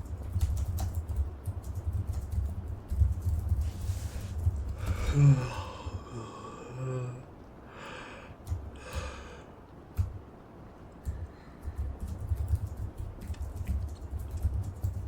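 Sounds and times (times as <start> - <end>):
computer keyboard typing: 0.0 - 5.2, 8.4 - 9.3, 9.9 - 10.2, 11.0 - 15.0
man sighing: 4.8 - 9.4.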